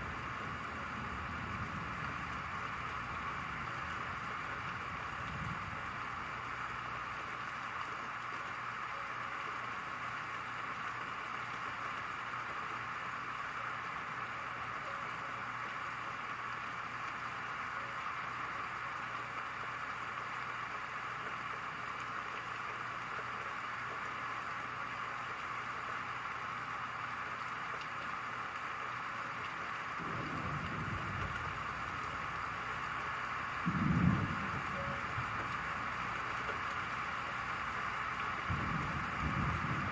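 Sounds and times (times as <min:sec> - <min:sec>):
light rain falling: 0:00.0 - 0:39.9
low rumble: 0:30.0 - 0:32.8.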